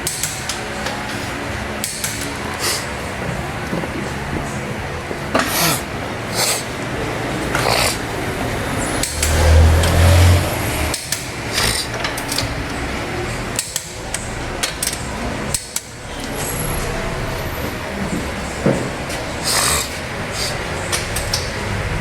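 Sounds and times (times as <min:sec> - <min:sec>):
torque wrench clicks: 0:01.8 - 0:02.8, 0:09.0 - 0:10.0.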